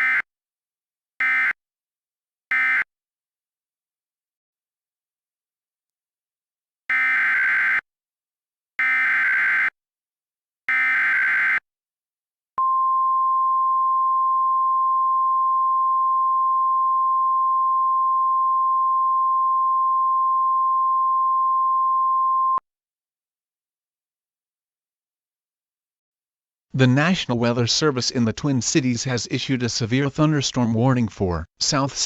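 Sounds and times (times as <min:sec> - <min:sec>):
steady warning alarm tone: 0:01.2 - 0:01.6, 0:02.5 - 0:02.9.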